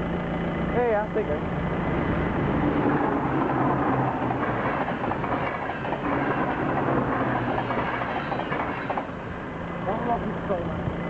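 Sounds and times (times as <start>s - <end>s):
train wheels clattering over rails: 2.5s - 9.3s.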